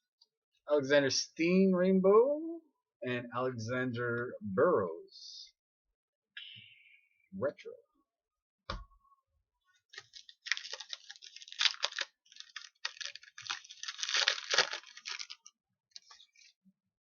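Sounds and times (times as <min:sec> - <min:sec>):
wrapper tearing and crinkling: 0:09.9 - 0:16.5.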